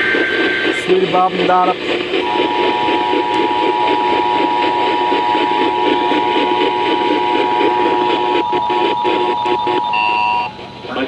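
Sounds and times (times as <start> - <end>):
two-tone alert signal: 0.0 - 4.2
noisy background: 0.0 - 11.0.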